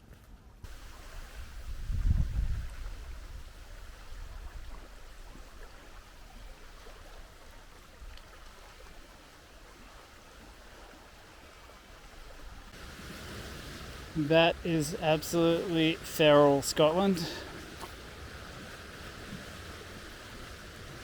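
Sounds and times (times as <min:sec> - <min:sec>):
wind buffeting microphone: 0:00.7 - 0:08.8.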